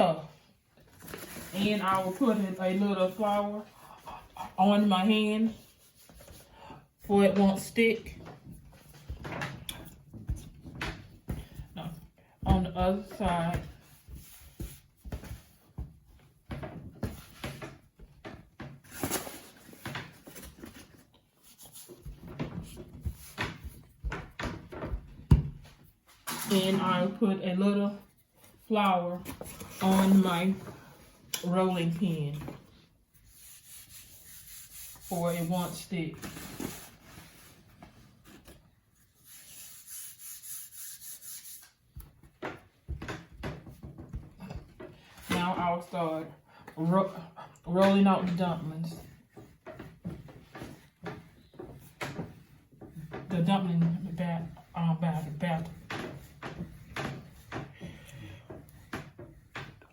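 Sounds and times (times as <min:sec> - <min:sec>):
hands swishing on rolling pin: 0:01.1 - 0:18.3, 0:18.9 - 0:27.1, 0:28.0 - 0:45.7.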